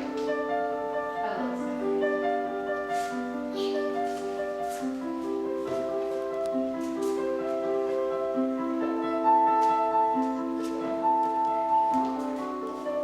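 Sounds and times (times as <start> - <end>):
slow piano music: 0.0 - 13.0.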